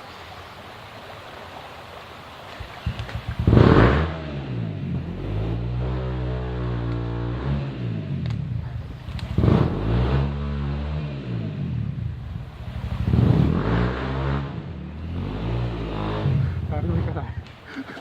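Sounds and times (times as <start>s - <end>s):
motorcycle engine revving: 3.3s - 17.2s.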